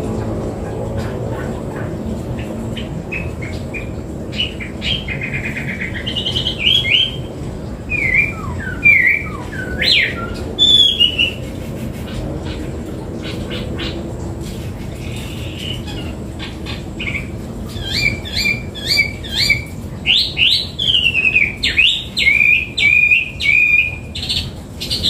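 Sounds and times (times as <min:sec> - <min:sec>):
bird singing whistled phrases: 0:07.9 - 0:11.4, 0:17.8 - 0:24.1.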